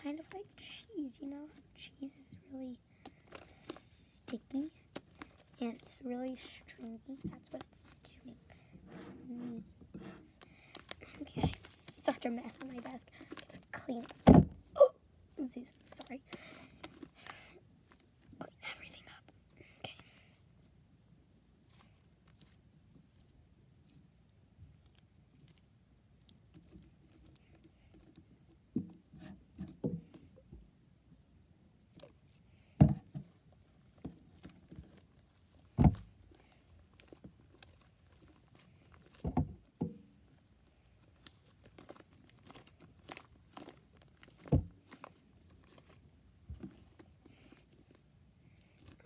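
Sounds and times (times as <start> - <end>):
light rustling: 31.9 - 49.0
knocks and thumps on a desk: 32.8 - 33.3.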